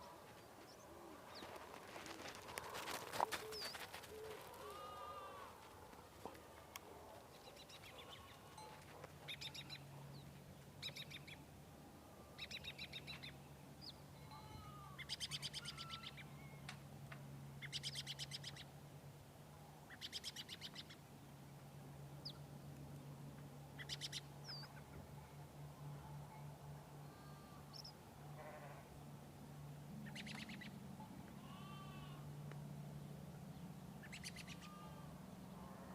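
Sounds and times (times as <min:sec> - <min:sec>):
faint low hum: 0:00.0 - 0:35.9
sheep bleating: 0:14.2 - 0:15.0, 0:28.4 - 0:28.9, 0:31.4 - 0:32.2, 0:34.6 - 0:35.1
songbirds trilling: 0:33.6 - 0:35.7.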